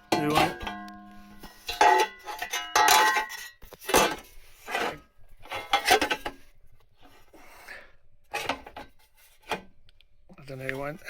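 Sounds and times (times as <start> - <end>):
steel panel clanking and rattling: 1.7 - 4.3.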